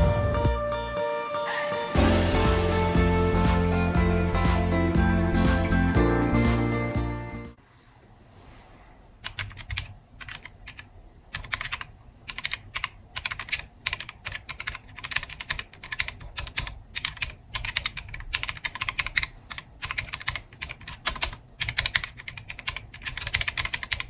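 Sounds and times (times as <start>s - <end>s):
keyboard typing clicks: 9.2s - 24.0s.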